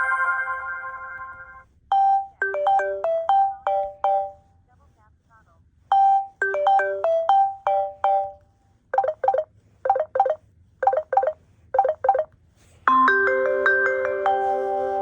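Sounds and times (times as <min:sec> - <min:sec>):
phone ringtone notes: 0:00.0 - 0:04.5, 0:05.9 - 0:08.4, 0:09.0 - 0:12.3, 0:12.9 - 0:15.0
quick double beeps: 0:09.0 - 0:12.3.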